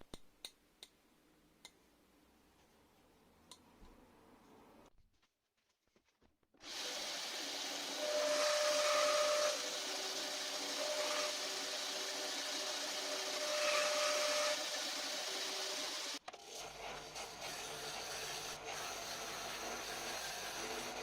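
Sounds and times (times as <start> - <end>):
electric power tool humming: 6.6 - 16.2.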